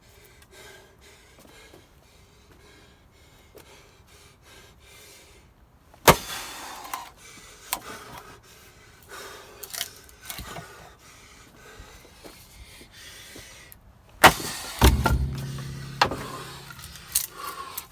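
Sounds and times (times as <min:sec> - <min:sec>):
axe striking firewood: 0:14.8 - 0:17.2
light knocks: 0:14.8 - 0:17.2.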